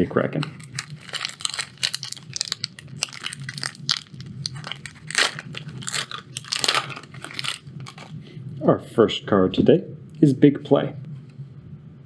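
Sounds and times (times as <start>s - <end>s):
foil wrapper crinkling: 0.4s - 8.2s.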